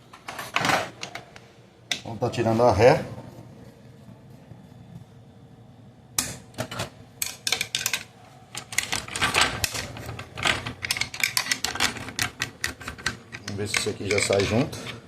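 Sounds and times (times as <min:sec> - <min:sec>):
metal gearbox parts clicking: 0:07.2 - 0:14.6.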